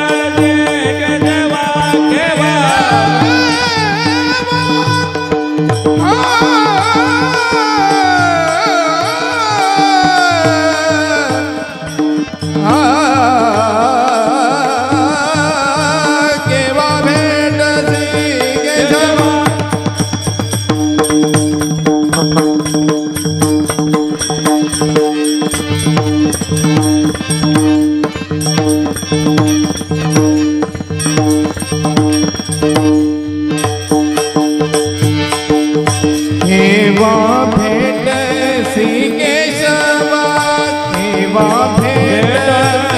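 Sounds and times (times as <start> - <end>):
person singing: 0.0 - 20.0, 36.4 - 42.9
fast hand drumming: 0.0 - 42.9
harmonium drone: 0.0 - 42.9.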